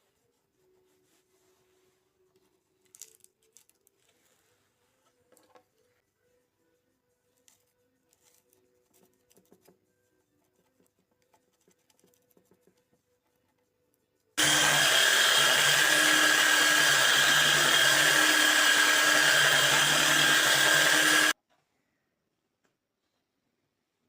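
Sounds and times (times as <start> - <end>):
electric power tool whining: 14.4 - 21.4.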